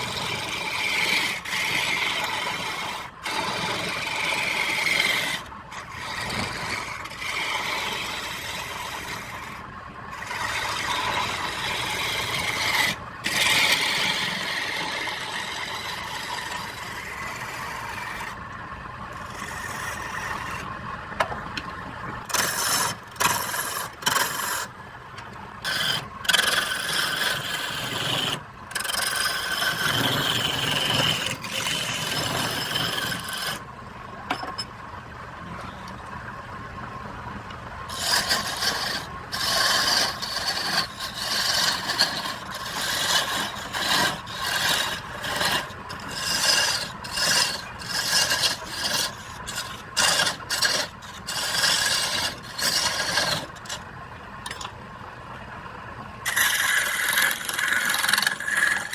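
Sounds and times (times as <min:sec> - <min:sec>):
wood scraped on a lathe: 0:00.0 - 0:20.8, 0:22.2 - 0:24.8, 0:25.6 - 0:33.7, 0:37.9 - 0:53.9, 0:56.2 - 0:58.9
faint motor whine: 0:00.0 - 0:58.9.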